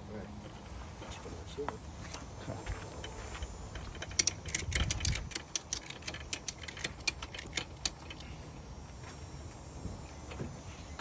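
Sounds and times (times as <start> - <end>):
sharp irregular clicks: 3.8 - 8.2.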